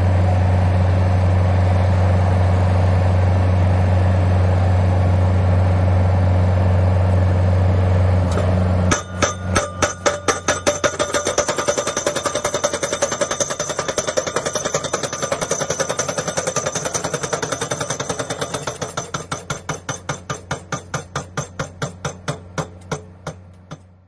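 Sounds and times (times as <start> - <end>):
steady engine hum: 0.0 - 24.0
impact hammer striking steel pile: 8.3 - 24.0.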